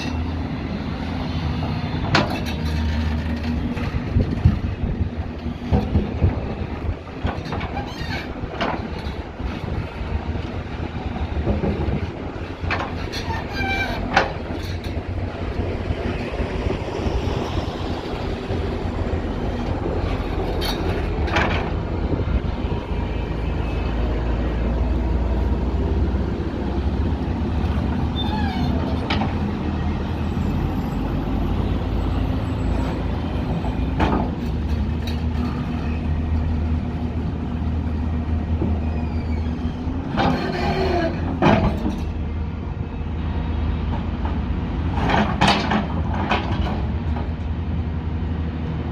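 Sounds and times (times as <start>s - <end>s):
machinery knocks and squeaks: 1.6s - 9.8s, 11.2s - 15.2s, 19.4s - 24.1s, 27.6s - 36.8s, 38.4s - 42.2s.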